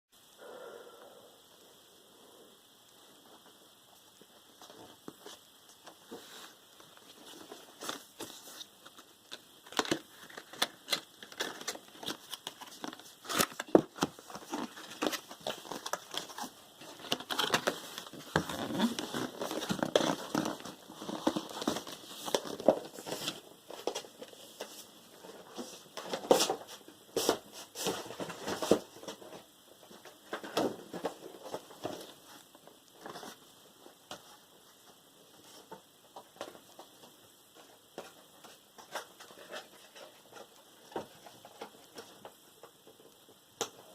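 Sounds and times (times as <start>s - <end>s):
packaging crinkling and rustling: 4.7s - 29.2s.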